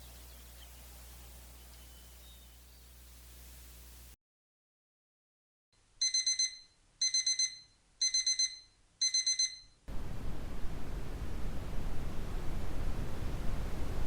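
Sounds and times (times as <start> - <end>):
steady noise hiss: 0.0 - 4.2, 9.9 - 14.0
timer beeping: 6.0 - 9.8.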